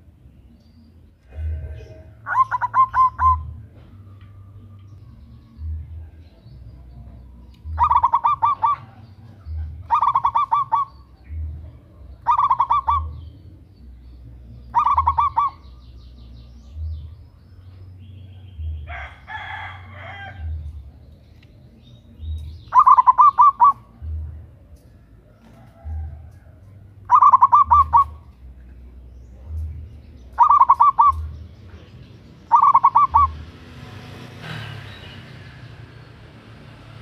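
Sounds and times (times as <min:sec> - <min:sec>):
dove cooing: 0:01.2 - 0:03.8, 0:07.6 - 0:13.5, 0:14.6 - 0:15.7, 0:22.7 - 0:24.3, 0:25.2 - 0:28.4, 0:30.3 - 0:31.4, 0:32.5 - 0:33.5
rough bird call: 0:32.4 - 0:33.4.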